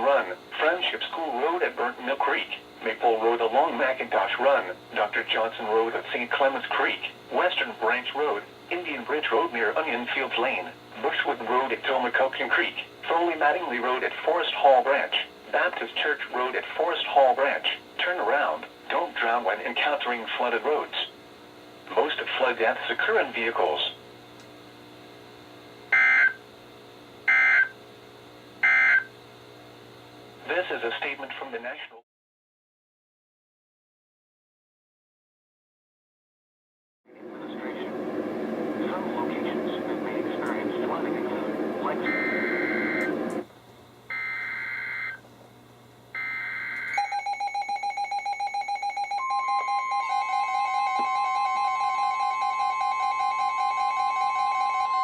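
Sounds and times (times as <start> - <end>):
steady warning alarm tone: 25.9 - 26.4, 27.3 - 27.8, 28.6 - 29.1, 38.6 - 43.4, 44.1 - 45.2, 46.2 - 55.0
rapid pulsing alert beep: 42.0 - 43.0
digital data tone bursts: 42.0 - 43.1.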